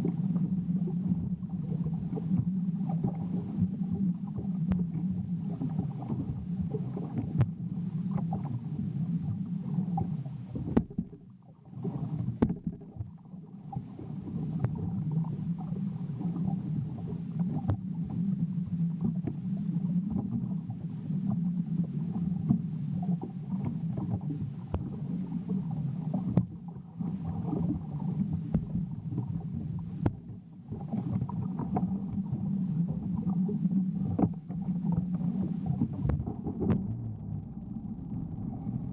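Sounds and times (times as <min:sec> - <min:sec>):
hull knocking on rough water: 0:10.6 - 0:11.2, 0:12.2 - 0:13.2, 0:28.3 - 0:30.4, 0:35.6 - 0:37.2.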